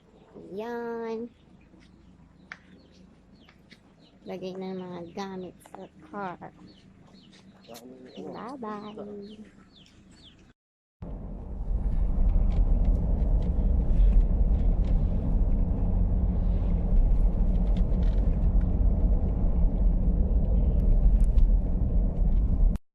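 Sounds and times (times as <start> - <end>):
car rumble from inside: 11.0 - 22.8.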